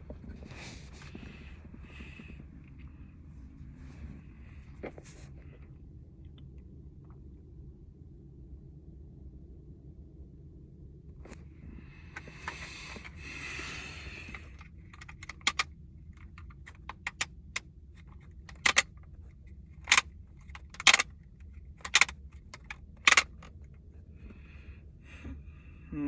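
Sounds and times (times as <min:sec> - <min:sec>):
sharp clicks and snaps: 0:12.2 - 0:19.1, 0:19.8 - 0:23.7.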